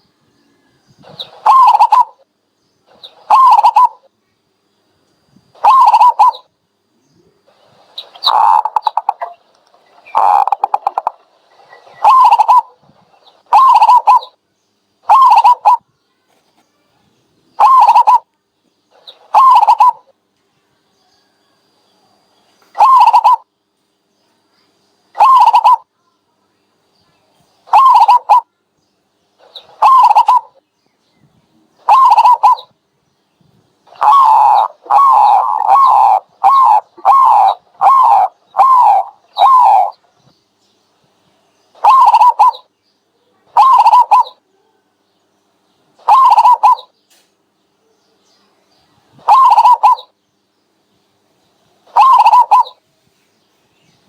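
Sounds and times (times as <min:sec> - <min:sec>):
dove calling: 0:00.9 - 0:04.1, 0:05.4 - 0:06.5, 0:07.4 - 0:14.4, 0:15.0 - 0:16.6, 0:17.3 - 0:18.3, 0:18.9 - 0:20.1, 0:22.6 - 0:23.6, 0:25.1 - 0:25.9, 0:27.4 - 0:28.5, 0:29.3 - 0:32.8, 0:33.4 - 0:40.3, 0:41.0 - 0:42.8, 0:43.4 - 0:44.5, 0:45.8 - 0:47.3, 0:49.0 - 0:50.2, 0:51.6 - 0:52.8.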